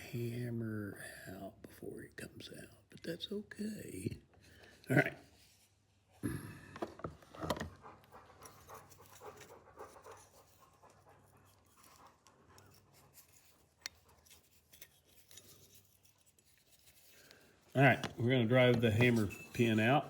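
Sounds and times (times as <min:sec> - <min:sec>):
hands and tool scraping: 0:06.8 - 0:20.0.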